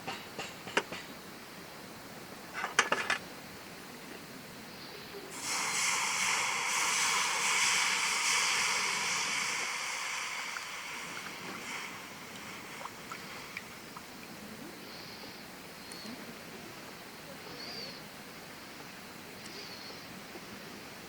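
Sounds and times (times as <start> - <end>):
hot cookware sizzling: 5.3 - 15.1.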